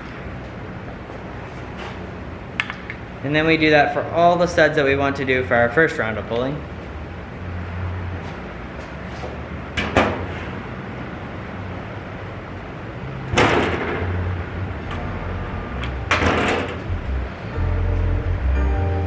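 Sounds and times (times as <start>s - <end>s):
low hum: 14.0s - 19.0s.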